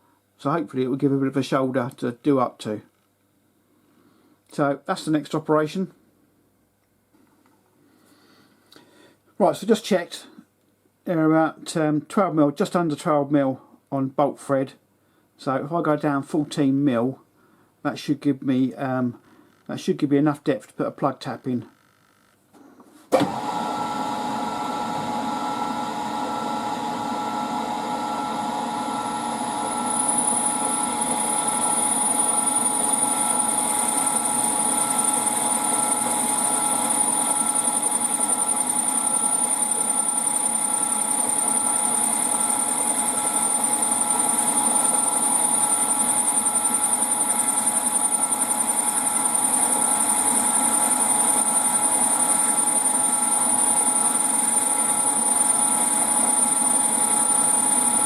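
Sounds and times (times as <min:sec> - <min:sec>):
drill spindle humming: 0:23.2 - 0:58.0
drill whining cutting metal: 0:24.4 - 0:58.0.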